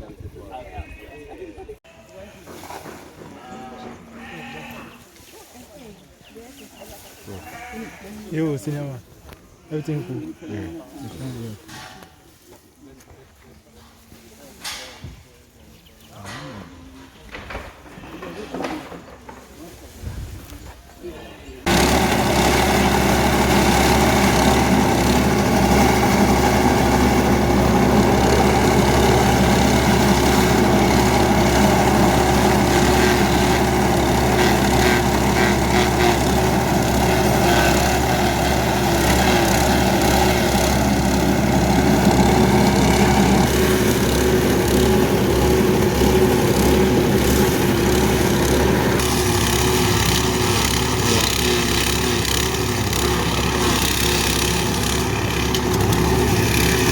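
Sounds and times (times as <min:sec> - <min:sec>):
engine running loudly: 0:21.7 - 0:56.9.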